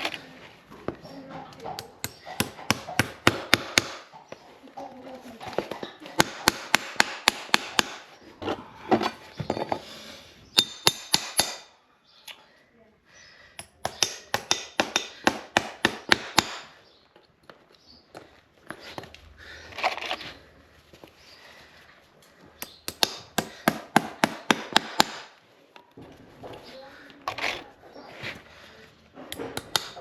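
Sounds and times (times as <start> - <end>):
hammer tapping: 1.5 - 4.1, 6.2 - 8.0, 10.6 - 11.7, 13.6 - 16.7, 22.6 - 25.4, 29.2 - 30.0.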